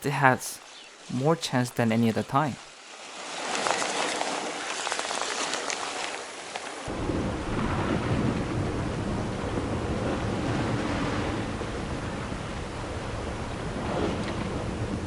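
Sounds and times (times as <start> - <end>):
sea water washing over rocks: 2.6 - 15.0
wind rumble on microphone: 6.9 - 15.0.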